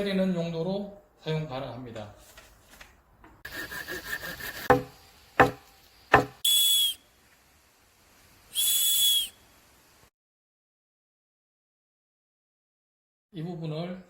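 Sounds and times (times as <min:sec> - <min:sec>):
hatchet head knocking: 0:04.7 - 0:06.4
shrill whistle blasts: 0:06.4 - 0:07.1, 0:08.5 - 0:09.4.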